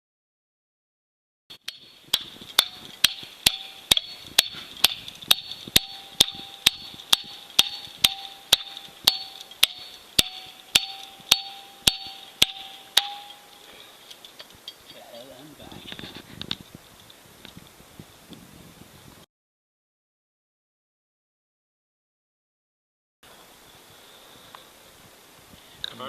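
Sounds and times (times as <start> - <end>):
hammer striking metal piton: 1.6 - 13.7.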